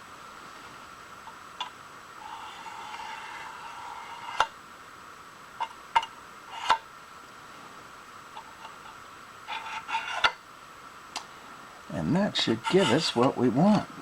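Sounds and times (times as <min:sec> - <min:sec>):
steel scribe scratching metal: 0:02.2 - 0:04.5, 0:06.5 - 0:06.8, 0:09.5 - 0:10.4, 0:12.4 - 0:13.9.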